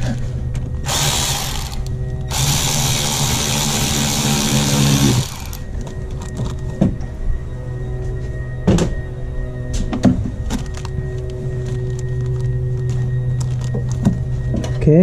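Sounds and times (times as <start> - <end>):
handheld power drill running: 0.8 - 6.6.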